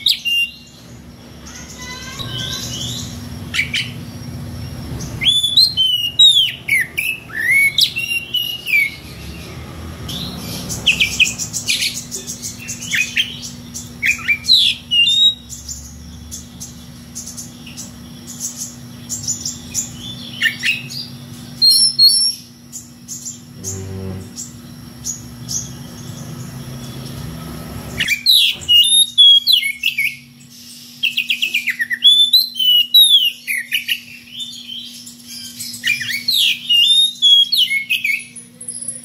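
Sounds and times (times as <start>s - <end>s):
bird singing whistled notes: 5.1s - 9.3s, 10.7s - 15.8s, 30.9s - 39.0s.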